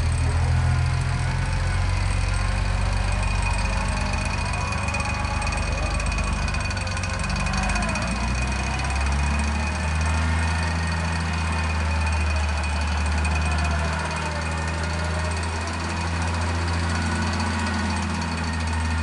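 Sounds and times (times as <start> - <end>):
off-road vehicle engine running: 0.0 - 19.0.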